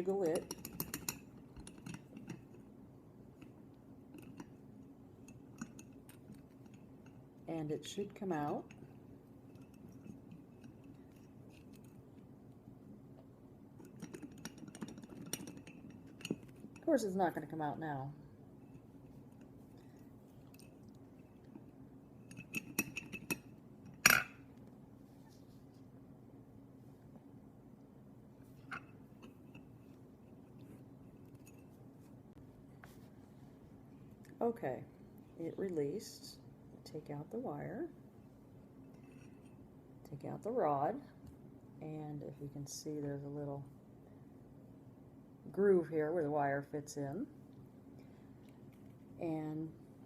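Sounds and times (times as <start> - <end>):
small metal parts clinking: 22.3 - 24.4.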